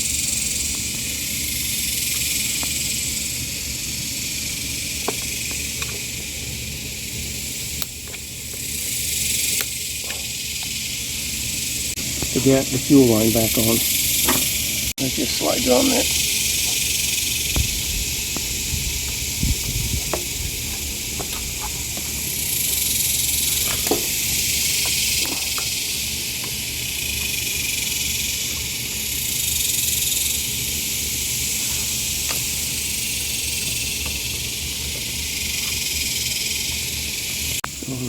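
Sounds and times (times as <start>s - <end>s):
high-pitched hiss: 0.0s - 38.0s.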